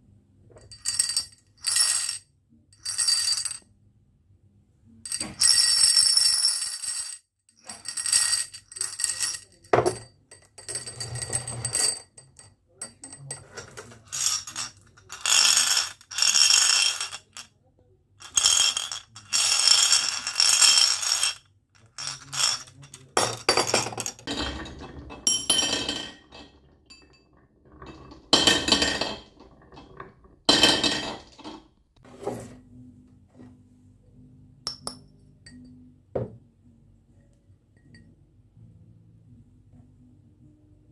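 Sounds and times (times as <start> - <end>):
marbles rolling and clinking: 0.6 - 2.2, 2.8 - 3.6, 5.1 - 17.5, 18.2 - 31.6.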